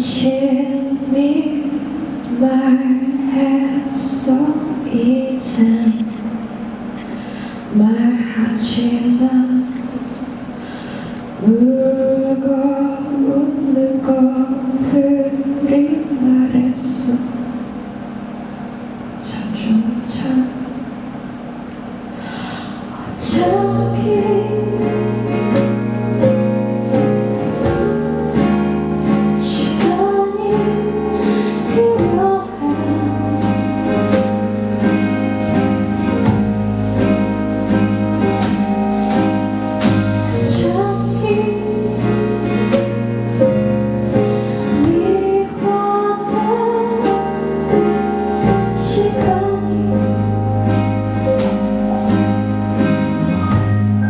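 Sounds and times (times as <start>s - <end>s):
woman singing: 0.0s - 6.4s, 7.7s - 10.1s, 11.4s - 17.6s, 19.2s - 20.8s, 22.9s - 26.0s, 29.0s - 35.0s, 40.3s - 43.0s, 44.1s - 50.9s
live pop-rock band: 22.1s - 54.0s.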